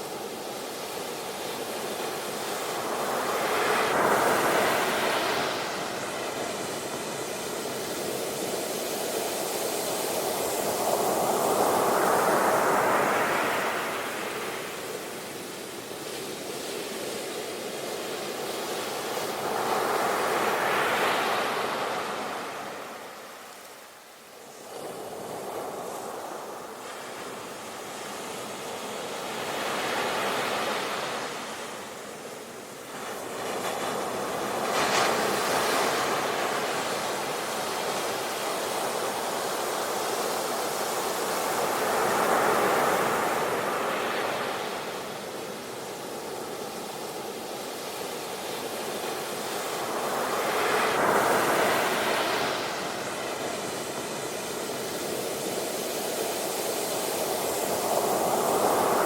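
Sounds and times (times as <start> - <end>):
sea waves surging: 24.4 - 59.0.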